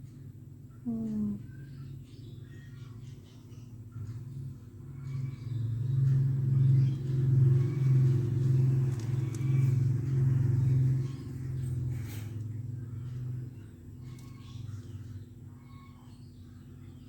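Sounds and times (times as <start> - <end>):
cat purring: 5.0 - 15.9.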